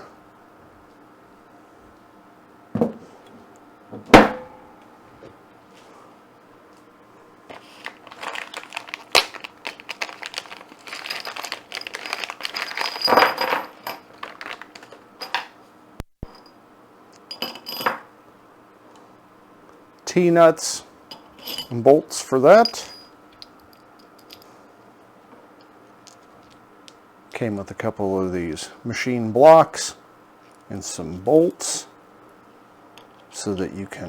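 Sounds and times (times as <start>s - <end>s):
sharp knock: 4.1s - 4.6s
packaging crinkling: 7.5s - 13.1s, 14.1s - 15.0s
metal parts clinking: 7.8s - 15.5s, 21.1s - 21.8s, 22.5s - 24.5s.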